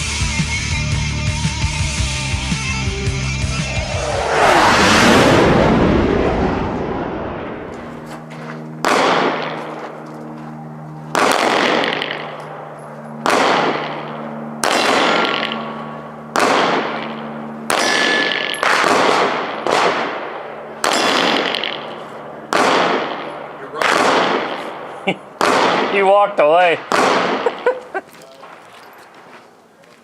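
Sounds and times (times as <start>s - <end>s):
gunshots with ringing echo: 8.8s - 9.8s, 11.1s - 26.0s, 26.8s - 27.5s.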